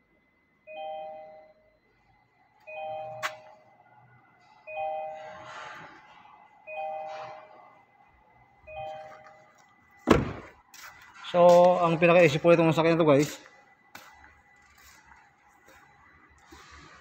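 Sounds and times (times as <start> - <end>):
car warning chime: 0.6 - 5.6, 6.6 - 7.9, 8.5 - 10.0.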